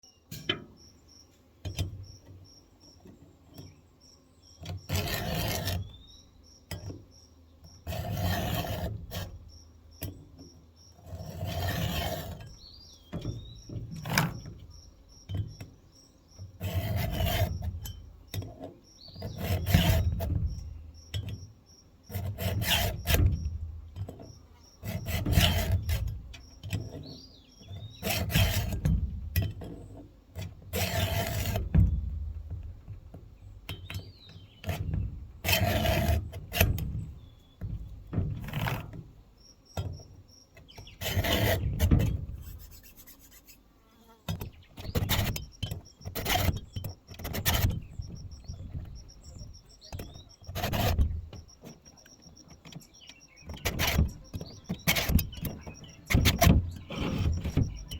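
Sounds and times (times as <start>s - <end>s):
hand file rasping on chain: 4.8s - 6.0s, 7.8s - 9.4s, 11.0s - 12.8s, 16.5s - 20.7s, 22.0s - 23.5s, 24.7s - 29.8s, 30.4s - 31.8s, 34.6s - 37.0s, 38.4s - 39.0s, 40.8s - 43.6s, 44.4s - 57.9s.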